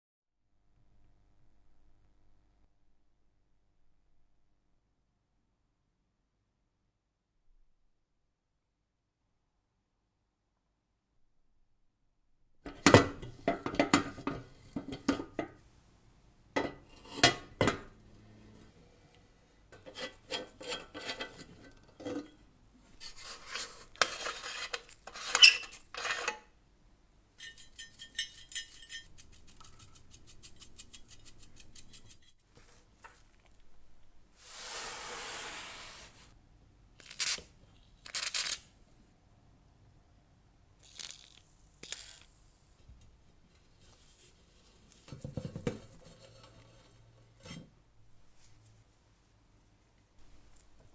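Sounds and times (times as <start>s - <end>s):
rasping scraping: 27.4s - 32.4s.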